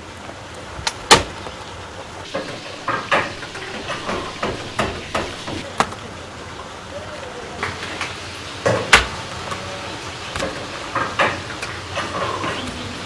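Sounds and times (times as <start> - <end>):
steady background noise: 0.0 - 13.0
sharp knocks and clatters: 2.3 - 6.0.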